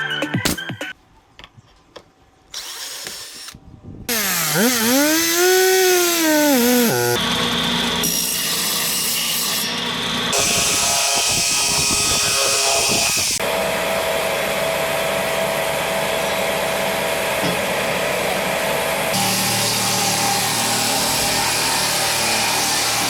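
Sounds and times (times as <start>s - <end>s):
power tools cutting wood: 2.5s - 13.4s, 19.1s - 23.0s.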